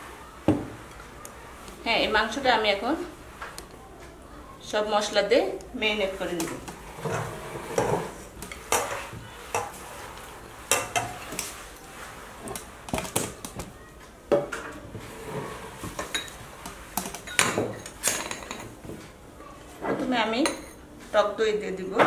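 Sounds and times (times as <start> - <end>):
crockery and utensils clinking: 10.7 - 11.6, 14.4 - 18.8.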